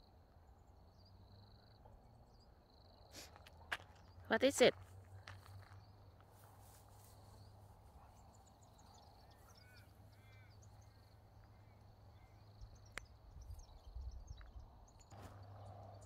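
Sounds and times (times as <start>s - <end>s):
faint bird chirps: 6.7s - 16.0s.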